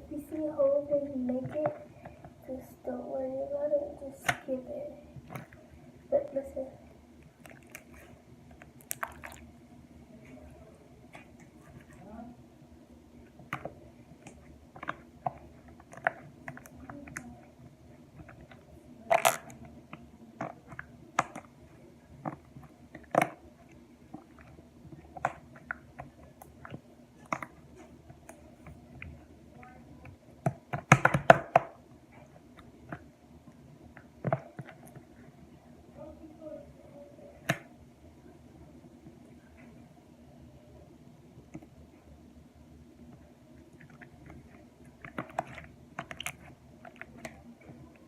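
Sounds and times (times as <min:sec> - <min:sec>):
slime squished by hand: 0:07.3 - 0:09.5.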